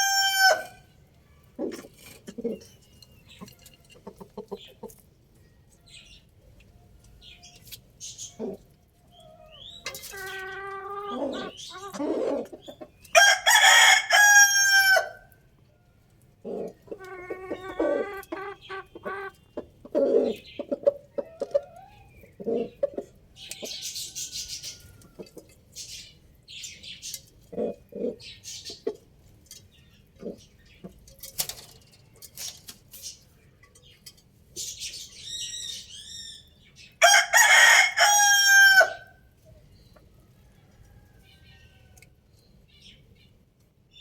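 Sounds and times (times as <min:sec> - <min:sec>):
roosters crowing: 0:00.0 - 0:00.9, 0:13.1 - 0:15.4, 0:37.0 - 0:39.3
chickens clucking: 0:00.0 - 0:44.0.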